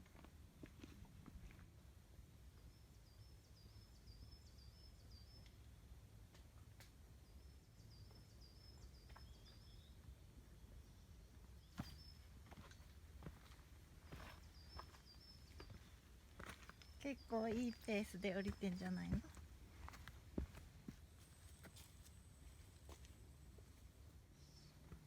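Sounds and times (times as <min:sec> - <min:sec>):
bird chirping: 0:07.3 - 0:10.0, 0:14.1 - 0:19.3.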